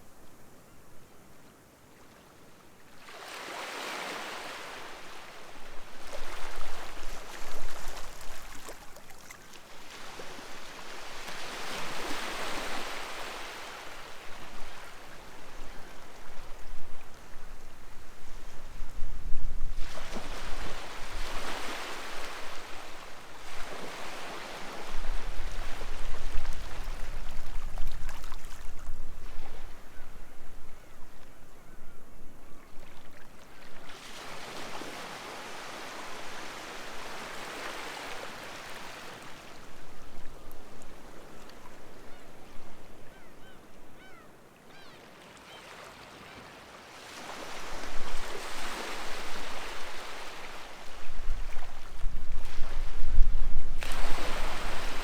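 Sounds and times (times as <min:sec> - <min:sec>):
sea waves washing onto shore: 0:46.9 - 0:55.0.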